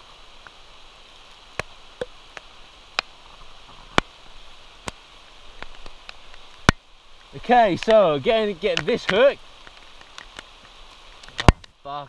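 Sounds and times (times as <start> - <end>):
light rain hiss: 0.0 - 12.0
raindrops ticking near microphone: 0.0 - 12.0.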